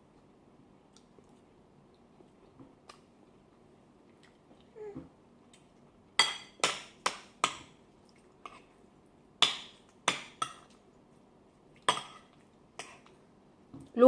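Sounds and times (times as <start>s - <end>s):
spoon clinking against a dish: 6.2s - 6.8s, 11.9s - 13.0s.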